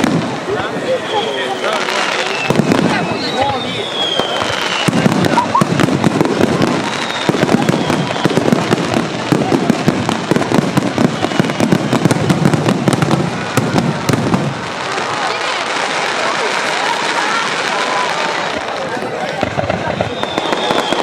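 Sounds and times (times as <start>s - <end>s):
fireworks crackling pops: 0.0s - 21.0s
faint falling whistle: 1.0s - 5.7s, 6.8s - 8.4s, 19.9s - 21.0s.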